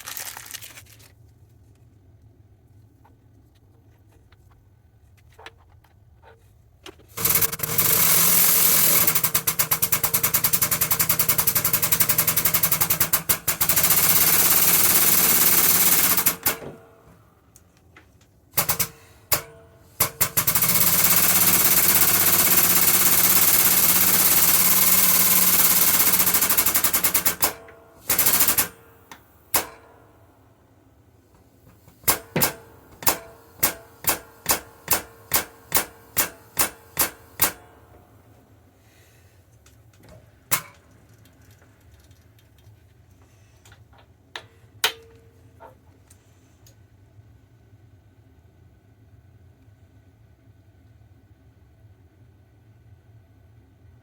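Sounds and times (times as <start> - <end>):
air hammer rattling: 6.2 - 17.3, 18.6 - 30.2, 31.4 - 38.1.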